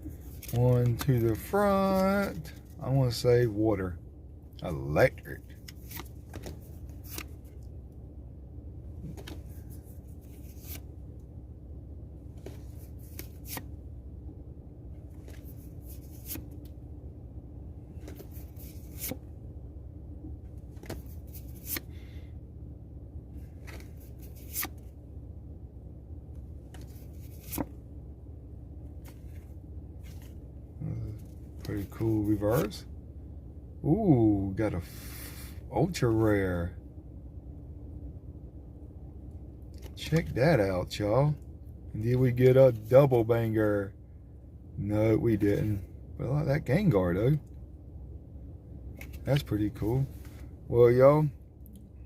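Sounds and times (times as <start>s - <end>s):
steady low hum: 0.0s - 52.0s
cards flipping with papery snap: 0.1s - 2.5s, 5.6s - 7.6s, 12.4s - 13.7s, 20.8s - 21.9s, 23.6s - 24.9s, 26.7s - 27.7s.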